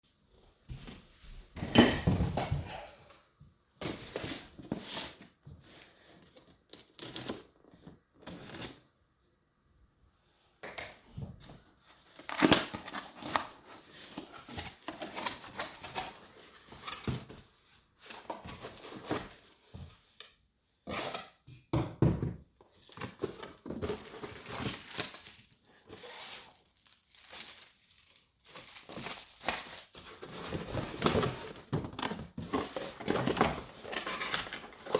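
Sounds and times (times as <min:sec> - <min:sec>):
packaging rustling and tearing: 0:22.9 - 0:34.9.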